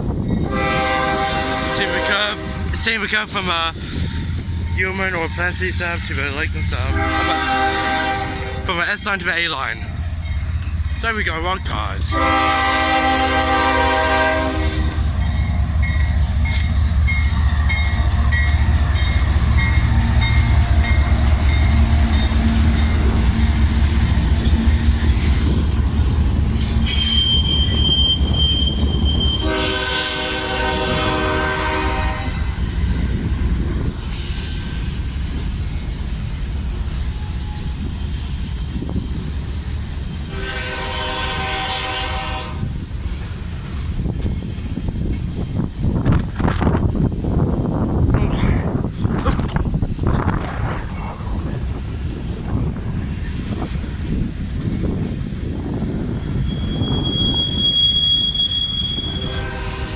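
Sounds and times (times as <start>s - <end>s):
freight cars running: 0.0s - 59.9s
locomotive rumble: 0.0s - 59.9s
train horn blast: 0.4s - 2.7s, 6.9s - 8.6s, 12.0s - 15.1s, 29.2s - 32.5s, 40.3s - 42.7s, 56.8s - 59.9s.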